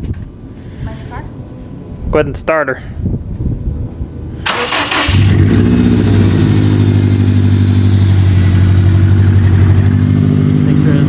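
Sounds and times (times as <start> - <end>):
car engine cranking and starting: 4.4 - 10.9
car engine idling loudly: 4.5 - 11.0.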